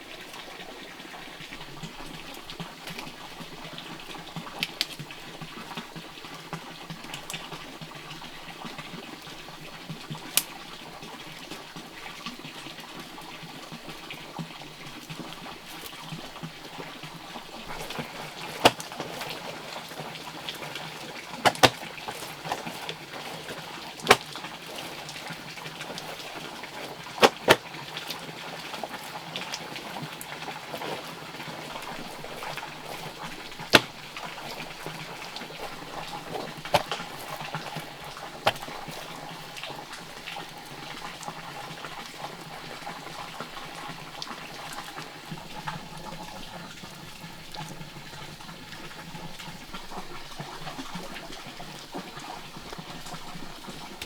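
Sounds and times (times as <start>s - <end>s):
sharp knocks: 21.5s - 24.2s, 27.2s - 27.6s.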